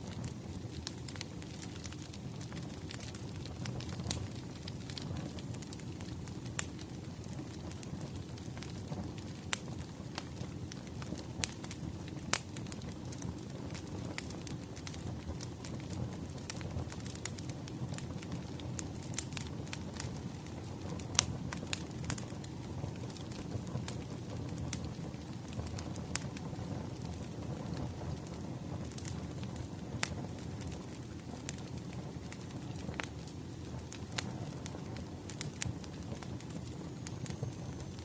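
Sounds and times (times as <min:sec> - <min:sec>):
fire crackling and popping: 0:00.0 - 0:38.0
low rumble of fire: 0:00.0 - 0:38.0.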